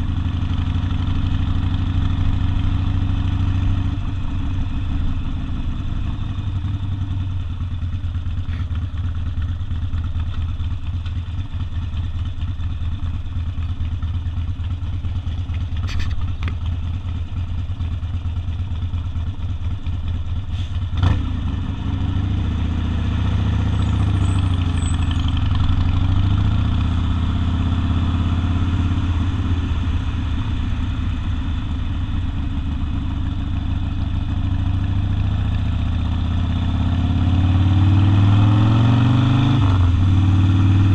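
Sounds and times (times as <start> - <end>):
motorcycle engine throbbing: 0.0 - 40.9.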